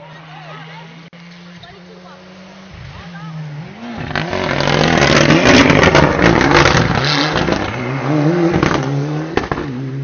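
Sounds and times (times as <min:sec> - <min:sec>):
rally car engine revving: 0:00.0 - 0:10.0.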